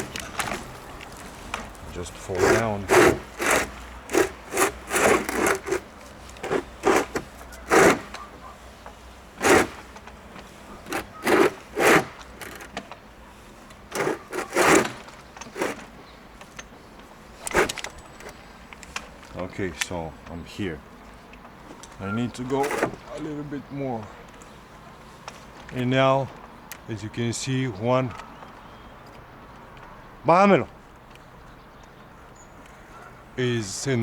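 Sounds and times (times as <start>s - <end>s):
rope rasping through descender: 1.3s - 8.2s, 9.4s - 9.8s, 10.9s - 12.8s, 13.9s - 15.8s.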